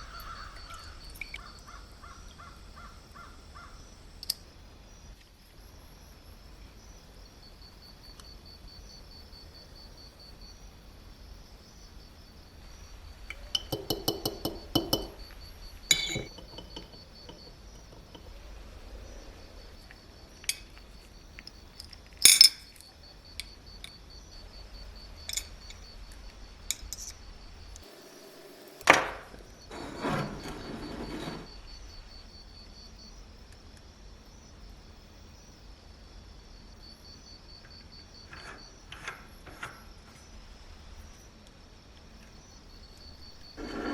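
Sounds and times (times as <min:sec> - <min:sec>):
faint high whine: 0:02.6 - 0:43.9
small metal parts clinking: 0:15.9 - 0:18.3, 0:21.4 - 0:22.8, 0:25.3 - 0:25.8.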